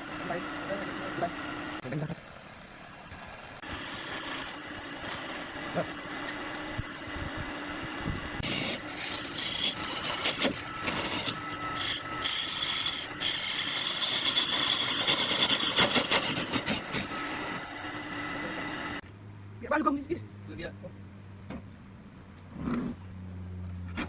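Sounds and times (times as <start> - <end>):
lathe motor hum: 0.0 - 19.0
tool scraping spinning wood: 3.6 - 19.0.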